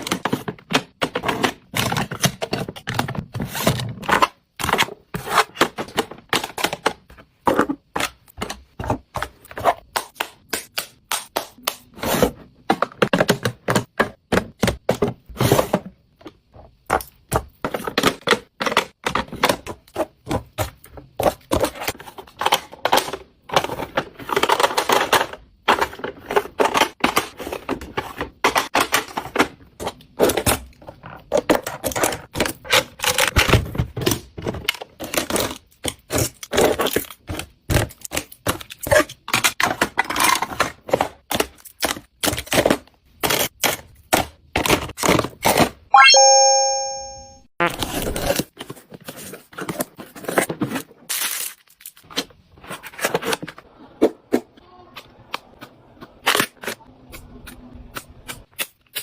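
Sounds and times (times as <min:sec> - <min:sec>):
packaging being handled and unpacked: 0:47.7 - 0:54.4.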